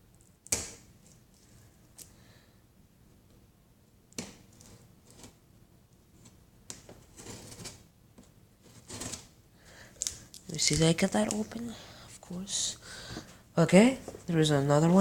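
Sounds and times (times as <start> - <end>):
cardboard scraping and rustling: 7.0 - 7.8, 8.6 - 9.3.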